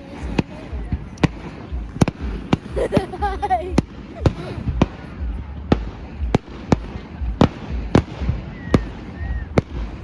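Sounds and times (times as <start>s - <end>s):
fireworks bangs: 0.0s - 10.0s
firework whistle: 8.0s - 10.0s.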